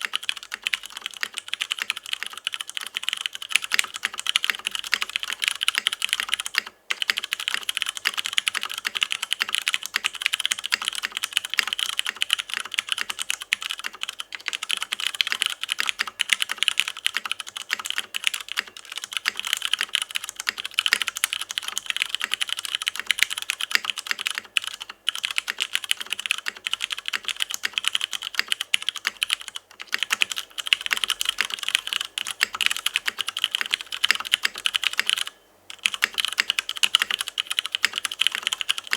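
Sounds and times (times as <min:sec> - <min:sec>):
typing on mechanical keyboard: 0:00.0 - 0:38.9.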